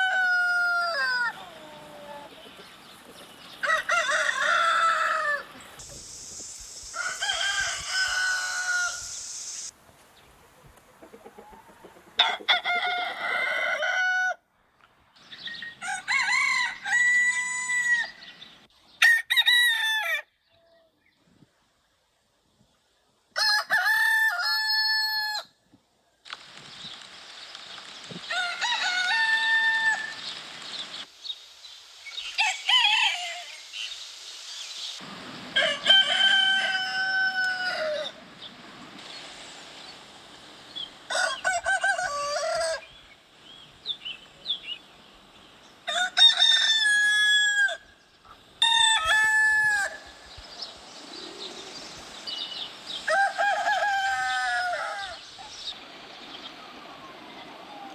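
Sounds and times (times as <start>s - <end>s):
roosters crowing: 0.0s - 6.1s, 6.8s - 9.7s, 11.0s - 14.5s, 15.6s - 20.3s, 23.4s - 25.5s, 28.1s - 31.1s, 32.3s - 33.7s, 35.0s - 43.3s, 45.7s - 55.8s.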